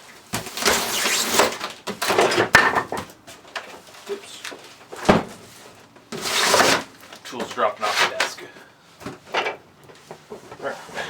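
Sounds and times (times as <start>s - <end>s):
cardboard rustling and scraping: 0.1s - 2.5s, 3.3s - 8.4s.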